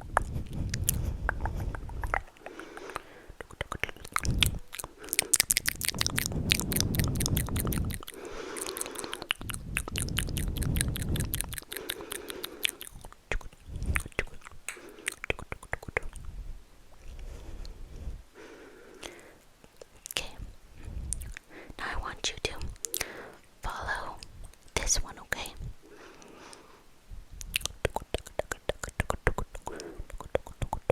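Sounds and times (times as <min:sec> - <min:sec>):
rubbing against microphone: 0:00.0 - 0:04.7, 0:08.8 - 0:11.7.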